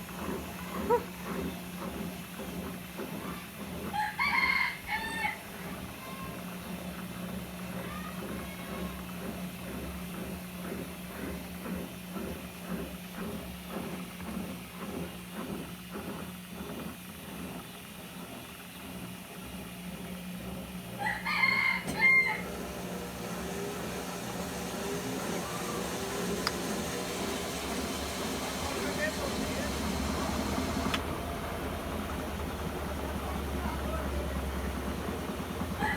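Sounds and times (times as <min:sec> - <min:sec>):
washing machine humming: 0:00.0 - 0:35.9
rooster crowing: 0:04.0 - 0:05.4, 0:21.0 - 0:22.5.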